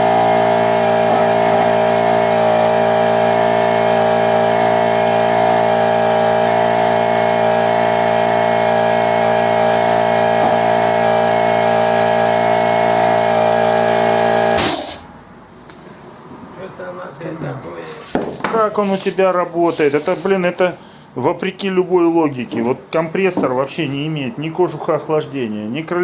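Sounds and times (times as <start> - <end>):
electric air compressor humming: 0.0 - 15.1, 17.8 - 20.4.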